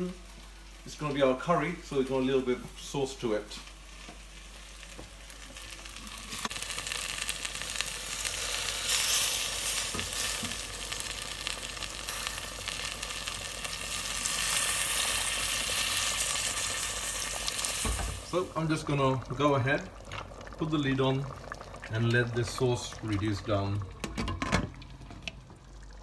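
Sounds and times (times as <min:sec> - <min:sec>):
food sizzling in a hot pan: 0:02.8 - 0:22.6.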